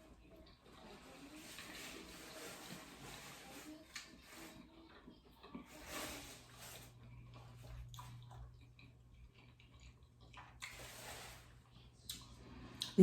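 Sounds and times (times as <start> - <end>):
low steady hum: 0.0 - 13.0
person chewing food: 3.9 - 13.0.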